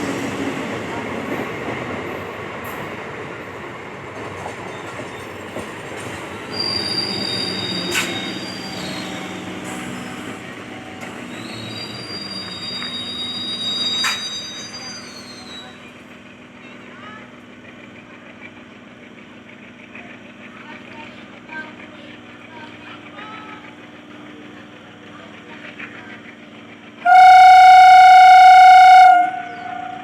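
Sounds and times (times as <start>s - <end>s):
train wheels rumbling on rail: 0.0s - 30.0s
high wheel squeal: 6.5s - 15.9s.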